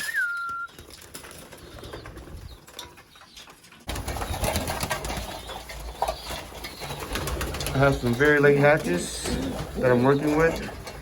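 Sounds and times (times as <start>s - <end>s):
person whistling: 0.0s - 0.7s
pigeons cooing: 0.0s - 3.3s, 3.9s - 11.0s
pigeon wings flapping: 3.9s - 11.0s.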